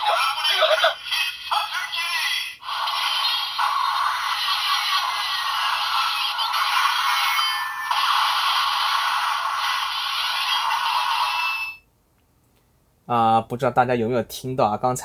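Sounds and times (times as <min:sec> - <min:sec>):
toy speaker sound effects: 0:00.0 - 0:11.7
tinny toy music: 0:00.0 - 0:11.8.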